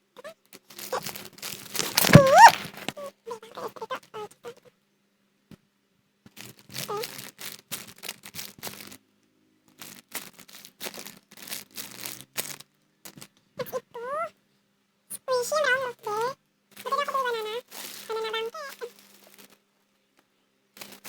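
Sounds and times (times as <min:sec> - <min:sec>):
squishy toy crinkling and rustling: 0:00.2 - 0:04.4, 0:06.3 - 0:09.1, 0:09.7 - 0:14.3, 0:15.3 - 0:19.6, 0:20.8 - 0:21.0.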